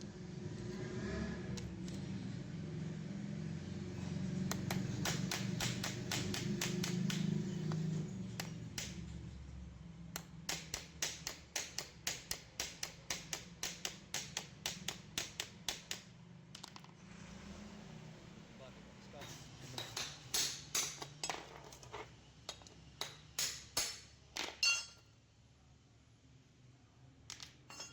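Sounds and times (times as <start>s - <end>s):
sharp evenly spaced clicks: 4.4s - 9.0s, 10.1s - 16.2s.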